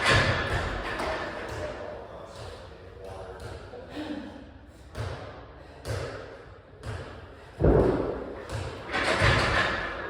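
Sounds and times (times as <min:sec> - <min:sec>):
irregular thuds and knocks: 0:07.6 - 0:10.0.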